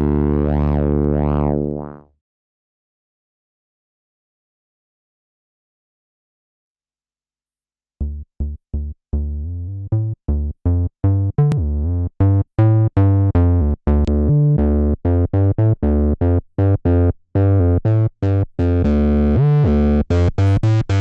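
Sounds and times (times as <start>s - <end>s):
synthesizer acid bassline: 0.0s - 2.0s, 8.0s - 21.0s.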